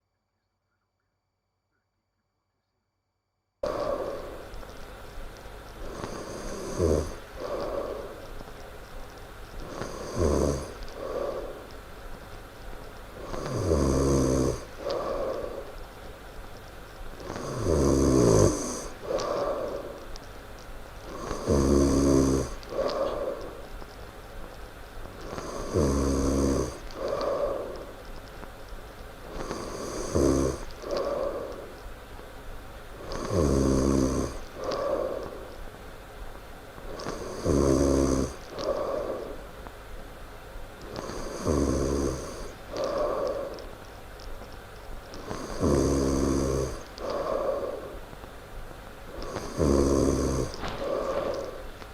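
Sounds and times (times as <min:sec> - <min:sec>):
person snoring loudly: 0:03.6 - 0:04.6, 0:05.8 - 0:08.4, 0:09.6 - 0:11.8, 0:13.1 - 0:15.8, 0:17.2 - 0:20.1, 0:21.0 - 0:23.8, 0:25.2 - 0:28.0, 0:29.2 - 0:31.8, 0:33.0 - 0:35.5, 0:36.8 - 0:39.5, 0:40.8 - 0:43.8, 0:45.1 - 0:48.1, 0:49.1 - 0:51.9
soft breath out: 0:03.6 - 0:12.3, 0:14.5 - 0:16.1, 0:18.7 - 0:24.5, 0:26.7 - 0:28.5, 0:29.2 - 0:31.9, 0:34.3 - 0:35.8, 0:38.2 - 0:39.8, 0:40.8 - 0:44.5, 0:45.2 - 0:48.4, 0:49.1 - 0:51.9.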